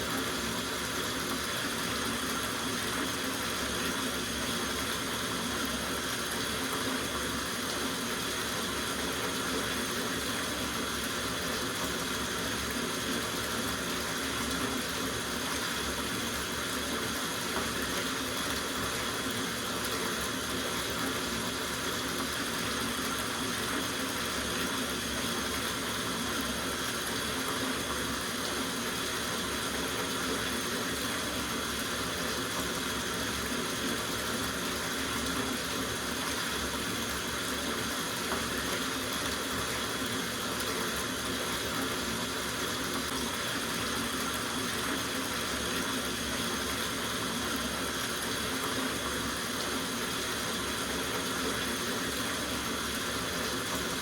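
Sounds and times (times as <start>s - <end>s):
tap water running into tub: 0.0s - 54.0s.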